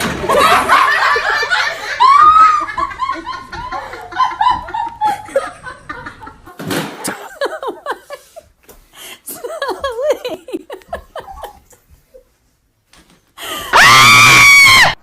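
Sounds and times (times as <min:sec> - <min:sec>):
people laughing: 0:00.1 - 0:08.5, 0:09.3 - 0:12.2.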